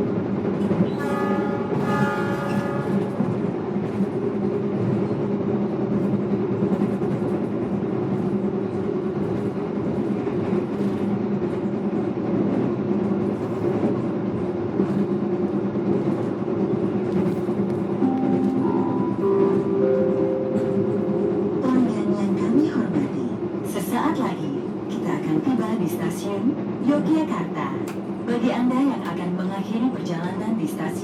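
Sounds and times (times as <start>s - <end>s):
train carriage rumble: 0.0s - 31.0s
held chord: 18.0s - 21.6s.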